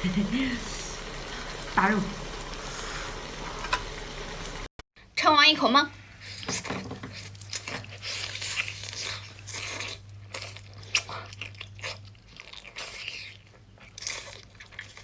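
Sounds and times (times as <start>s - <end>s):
person chewing wetly: 7.1s - 15.0s.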